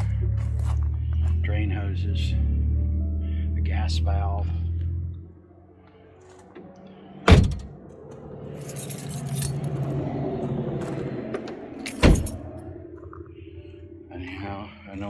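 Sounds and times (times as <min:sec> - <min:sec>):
loose parts rattling and scraping: 0:08.6 - 0:10.0, 0:11.8 - 0:12.4.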